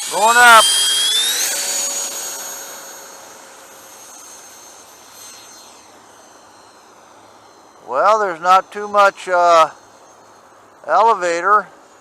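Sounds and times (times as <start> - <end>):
electric jet fan whine: 0.0 - 12.0.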